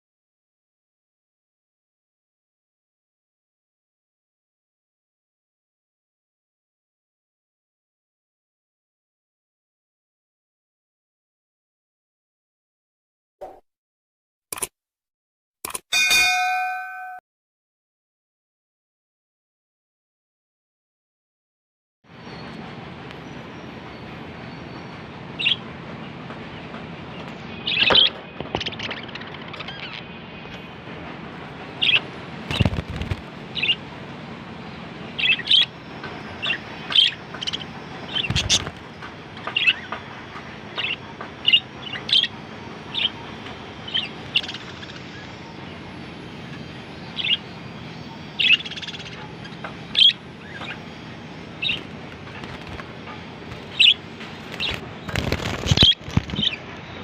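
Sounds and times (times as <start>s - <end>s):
steady background hum: 22.1s - 57.0s
budgerigars chirping: 35.2s - 35.7s, 36.4s - 38.7s, 43.9s - 45.5s, 47.2s - 47.5s, 48.4s - 50.9s, 53.7s - 56.6s.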